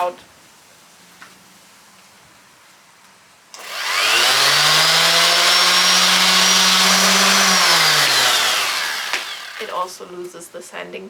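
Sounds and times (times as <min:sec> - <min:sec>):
electric sander whining: 0:03.6 - 0:09.9
sander switch click: 0:07.4 - 0:09.6.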